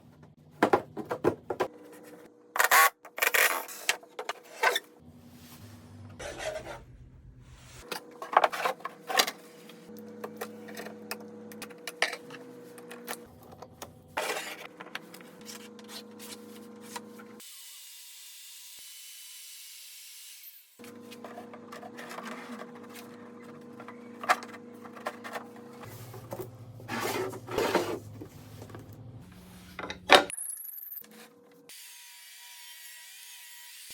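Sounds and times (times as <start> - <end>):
scraping and rubbing on wood: 21.0 - 28.9.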